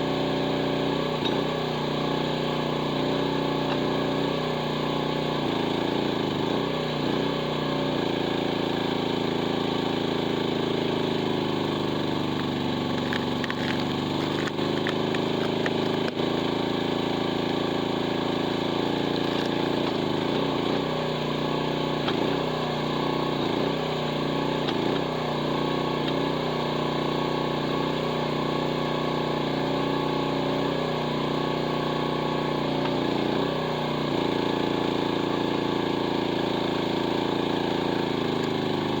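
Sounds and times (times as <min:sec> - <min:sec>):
excavator engine at high throttle: 0:00.0 - 0:39.0.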